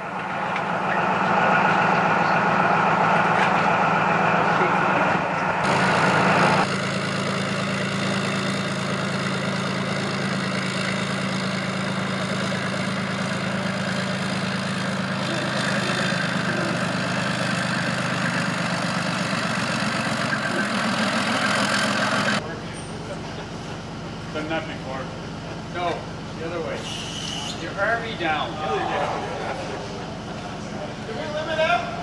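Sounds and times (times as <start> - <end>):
engine idling: 0.0 - 32.0
loud hissing: 26.7 - 27.7.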